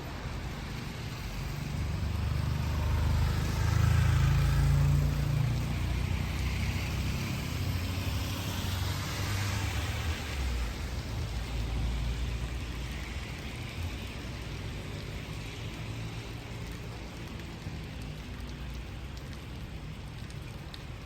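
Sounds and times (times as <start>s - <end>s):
rain falling: 0.0s - 21.0s.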